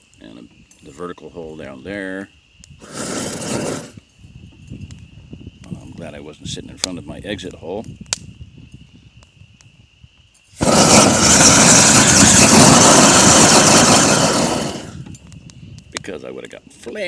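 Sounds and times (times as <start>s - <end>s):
fire flaring with rushing blast: 2.7s - 6.0s, 10.5s - 16.0s.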